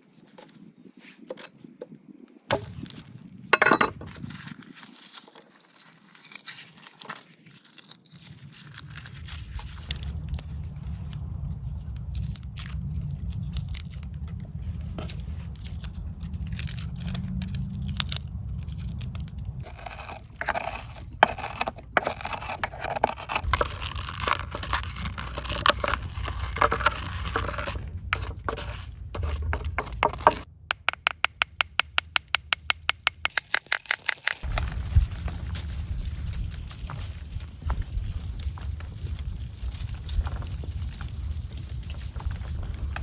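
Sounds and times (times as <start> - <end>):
low steady rumble: 8.8 - 33.1, 34.4 - 43.0
utensils scraping and clicking: 15.0 - 34.5.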